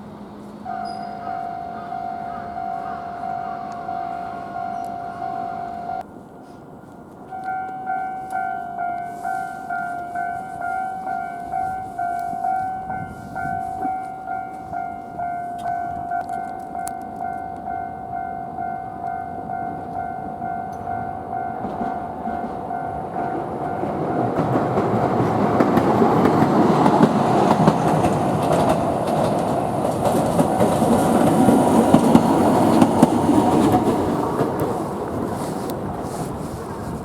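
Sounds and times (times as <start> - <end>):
level crossing warning bell: 0.0 - 6.1, 7.3 - 35.7
tram rumbling over crossing: 0.0 - 37.0
sharp clacks of wheels: 21.6 - 37.0.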